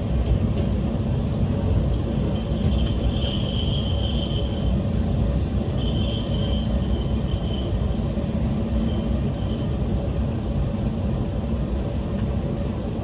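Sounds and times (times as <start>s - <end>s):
train wheels and engine rumbling: 0.0s - 13.0s
high-pitched wheel squeal: 1.8s - 4.9s, 5.6s - 10.2s.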